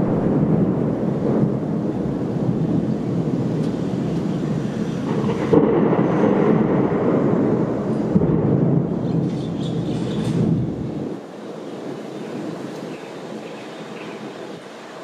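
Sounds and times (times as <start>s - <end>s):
thunder rumbling: 0.0s - 15.0s.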